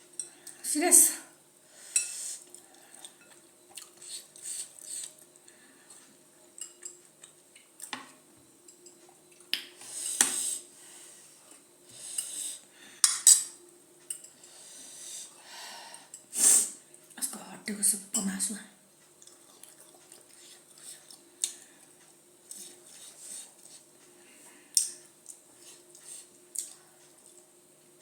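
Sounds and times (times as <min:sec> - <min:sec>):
utensils clinking on dishes: 0:13.0 - 0:14.6.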